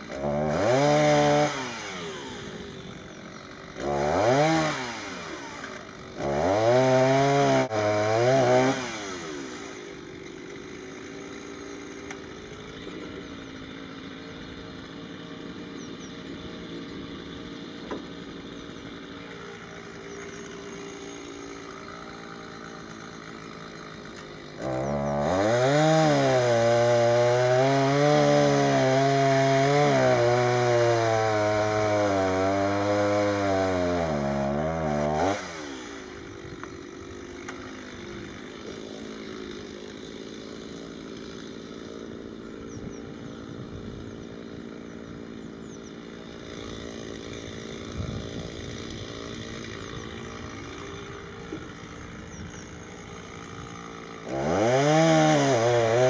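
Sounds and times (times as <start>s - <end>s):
chainsaw cutting wood: 0.0s - 56.0s
chainsaw revving and idling: 0.0s - 56.0s.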